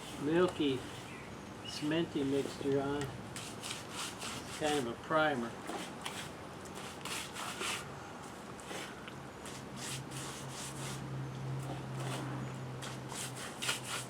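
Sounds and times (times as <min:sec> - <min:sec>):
brush scrubbing concrete: 0:00.0 - 0:01.1, 0:02.2 - 0:02.7, 0:03.4 - 0:05.0, 0:05.7 - 0:07.8, 0:09.5 - 0:11.0, 0:12.0 - 0:14.0.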